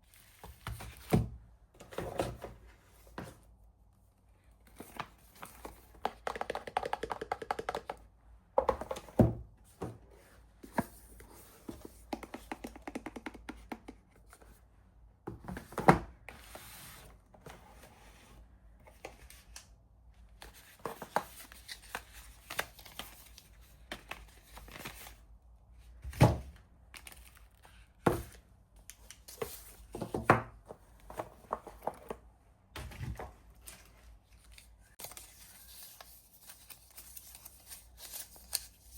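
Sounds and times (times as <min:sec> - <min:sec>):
paper and cardboard rustling: 0:32.8 - 0:38.9.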